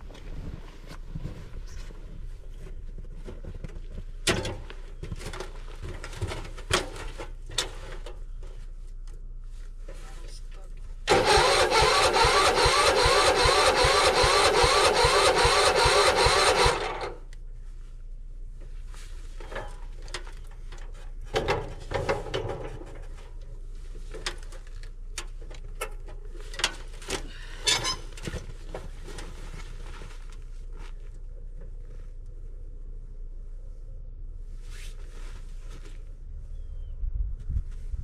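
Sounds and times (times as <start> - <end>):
starter motor cranking engine: 11.1 - 17.2.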